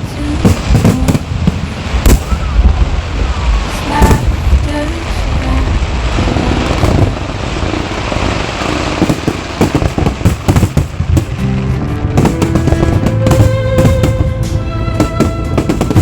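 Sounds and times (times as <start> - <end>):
fireworks crackling hiss: 0.0 - 16.0
fireworks sharp bangs: 0.1 - 4.6, 6.1 - 16.0
music: 11.2 - 16.0.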